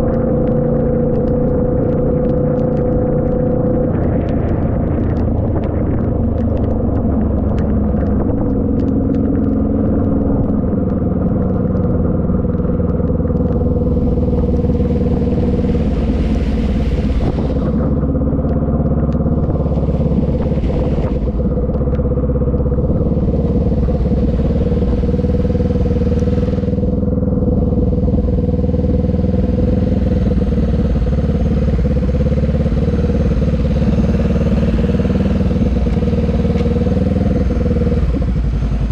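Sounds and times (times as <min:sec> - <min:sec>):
motorbike engine rumble: 0:00.0 - 0:38.9
rushing hiss: 0:14.6 - 0:18.0.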